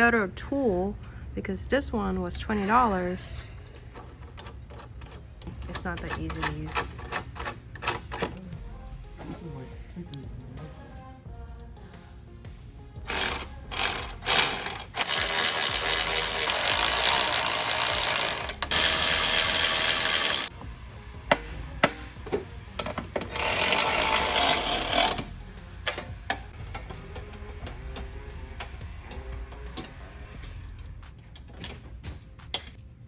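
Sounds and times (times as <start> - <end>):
rapid clicking tool: 13.1 - 20.5, 23.2 - 26.4.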